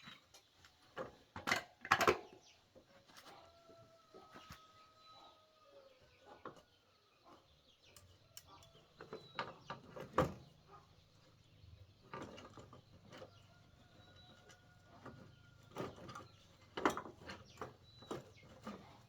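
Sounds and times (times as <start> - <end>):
scattered clicks and knocks: 0.0 - 2.4.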